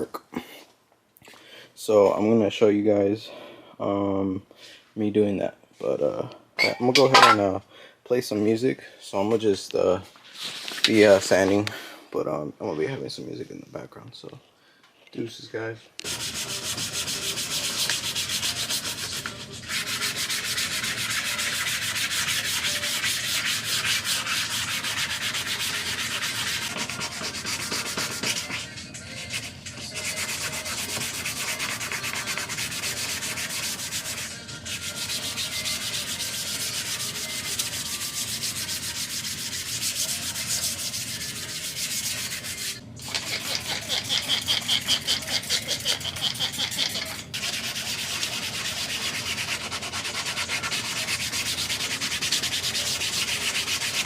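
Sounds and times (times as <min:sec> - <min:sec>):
sandpaper rubbing on painted metal: 0:16.0 - 0:54.0.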